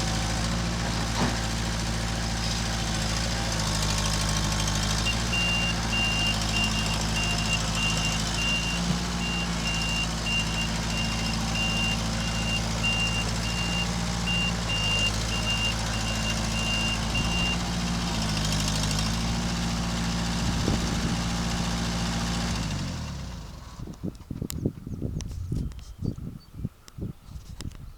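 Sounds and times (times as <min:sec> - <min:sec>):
diesel engine running: 0:00.0 - 0:24.4
reversing alarm beeping: 0:05.0 - 0:17.7.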